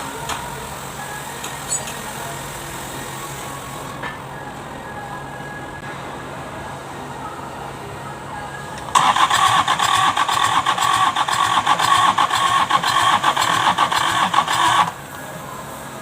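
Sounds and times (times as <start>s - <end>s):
mechanical whirring clatter: 8.9s - 15.1s.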